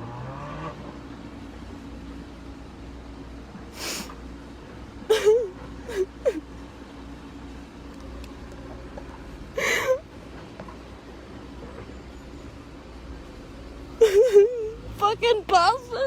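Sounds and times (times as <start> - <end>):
person crying and sobbing: 5.1 - 6.4, 9.6 - 10.0, 14.0 - 14.8.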